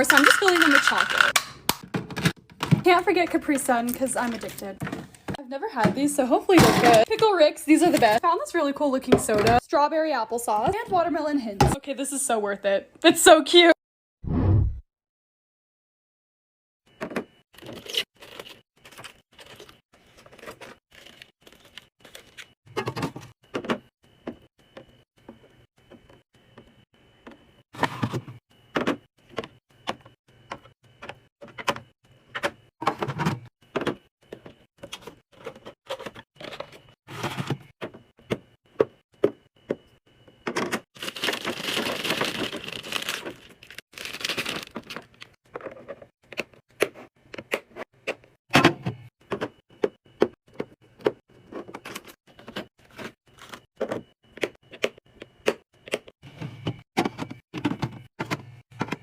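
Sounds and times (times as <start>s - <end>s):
plastic containers clacking: 0.0s - 1.4s.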